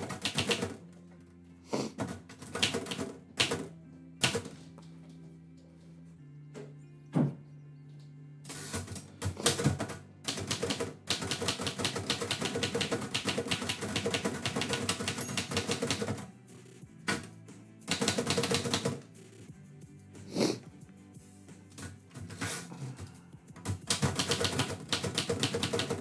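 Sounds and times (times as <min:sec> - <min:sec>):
typewriter keys clacking: 0:00.0 - 0:00.7, 0:08.5 - 0:16.2, 0:17.9 - 0:19.0, 0:23.6 - 0:26.0.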